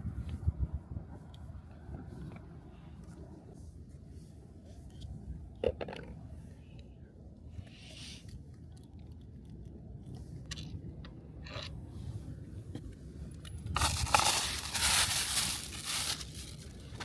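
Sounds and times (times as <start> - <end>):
packing material crinkling scrape: 13.8 - 17.0.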